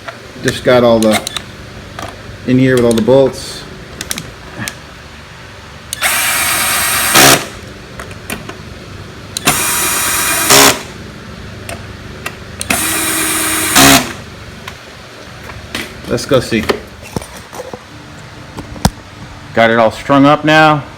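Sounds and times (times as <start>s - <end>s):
power driver tightening bolts: 5.9s - 7.5s.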